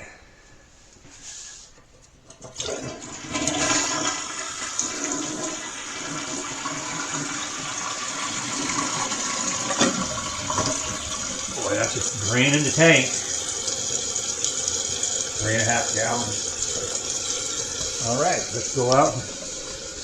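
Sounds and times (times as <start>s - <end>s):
toilet flushing water rush: 2.3s - 20.0s.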